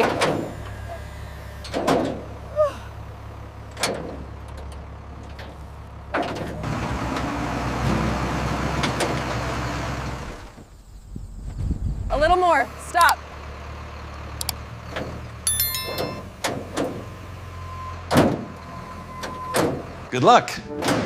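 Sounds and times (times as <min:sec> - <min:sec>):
heavy vehicle rolling and grinding: 0:00.0 - 0:10.9, 0:11.6 - 0:21.0
vehicle engine running low: 0:00.0 - 0:20.3
knocks and clunks: 0:18.1 - 0:18.6, 0:20.7 - 0:21.0.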